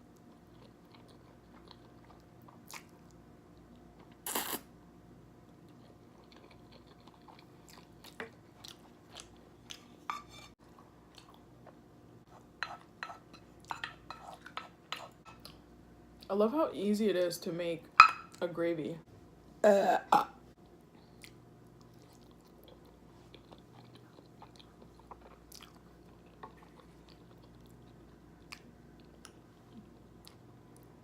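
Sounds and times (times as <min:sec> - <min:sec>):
person chewing food: 0:00.1 - 0:04.6, 0:05.6 - 0:10.0, 0:10.6 - 0:15.6, 0:20.6 - 0:31.0.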